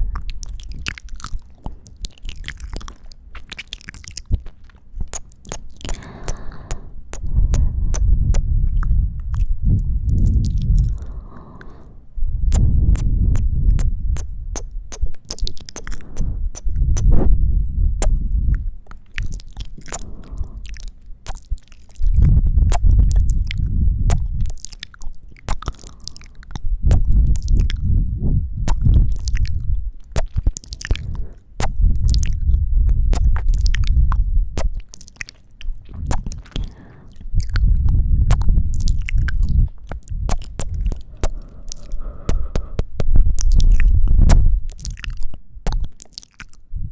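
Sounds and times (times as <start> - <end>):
wet kissing and sucking clicks: 0.1 - 11.9, 12.5 - 17.3, 18.0 - 27.9, 28.6 - 37.7, 38.3 - 46.6
breaths blown into microphone: 5.5 - 9.0, 19.2 - 21.4, 35.9 - 43.0.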